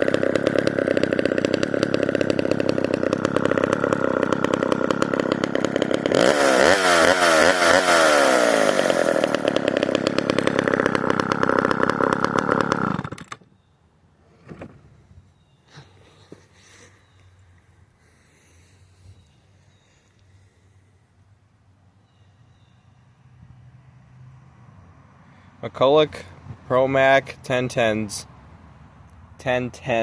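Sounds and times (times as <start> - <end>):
chainsaw revving: 0.0 - 13.4.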